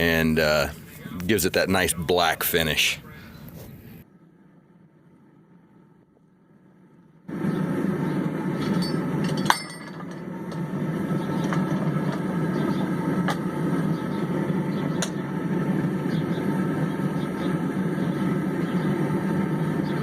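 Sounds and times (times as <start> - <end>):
low rushing roar: 0.0 - 20.0.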